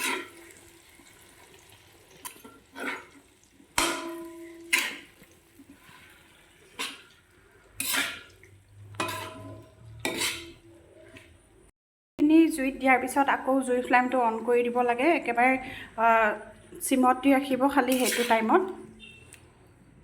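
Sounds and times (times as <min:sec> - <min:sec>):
spoon scraping iron pan: 0:00.0 - 0:00.5, 0:02.2 - 0:03.2, 0:03.8 - 0:05.1, 0:06.7 - 0:07.1, 0:07.8 - 0:10.7, 0:17.8 - 0:18.8.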